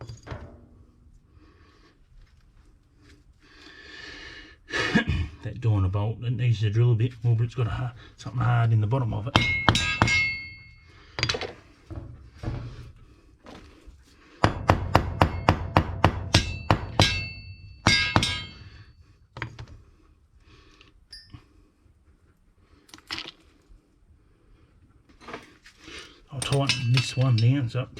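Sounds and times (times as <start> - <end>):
hammer clanging on steel anchor: 9.3 - 11.6, 14.4 - 18.9, 26.4 - 27.7.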